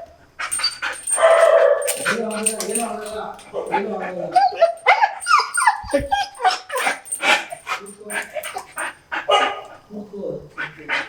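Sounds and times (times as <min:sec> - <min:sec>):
dog whining: 0:00.5 - 0:03.5, 0:04.4 - 0:09.6
dog yelping: 0:04.4 - 0:09.7.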